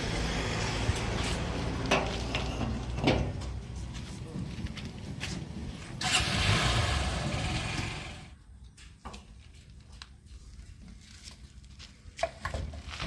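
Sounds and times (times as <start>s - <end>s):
diesel engine rumbling: 0.0s - 8.4s.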